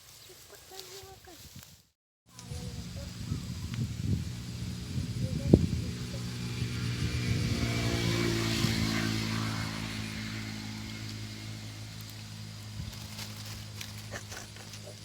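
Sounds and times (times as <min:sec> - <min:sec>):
motor engine humming: 0:02.3 - 0:15.0.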